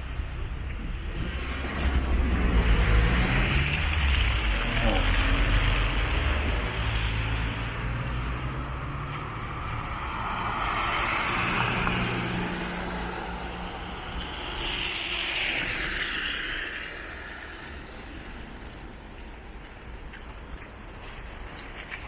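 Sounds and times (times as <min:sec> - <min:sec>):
low engine hum: 0:00.0 - 0:14.7
tyre noise from passing cars: 0:00.0 - 0:22.0.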